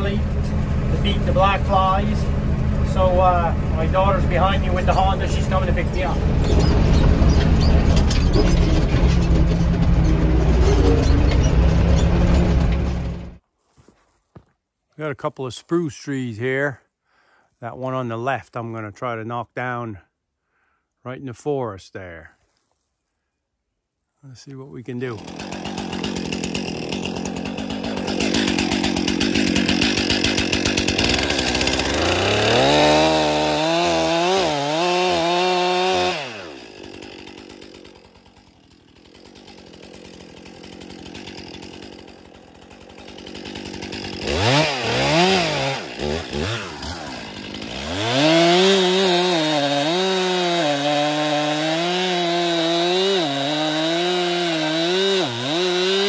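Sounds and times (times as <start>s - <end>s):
chainsaw cutting tree: 0.0s - 13.4s, 25.0s - 56.0s.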